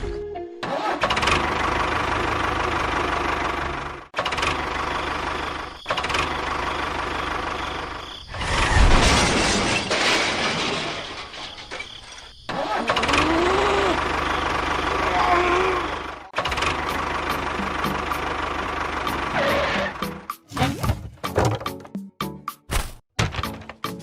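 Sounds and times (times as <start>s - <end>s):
engine running with knocking hum: 13.0s - 20.3s.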